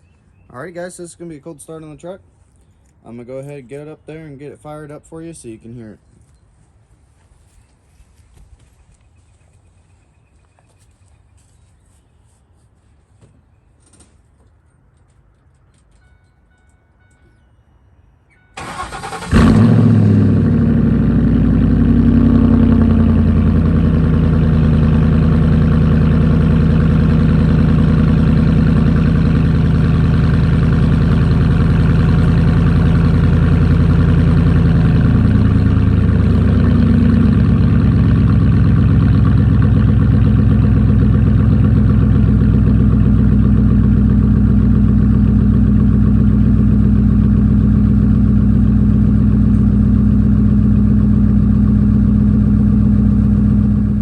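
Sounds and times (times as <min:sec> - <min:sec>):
engine cranking: 0:18.6 - 0:20.0
engine idling fast: 0:18.6 - 0:54.0.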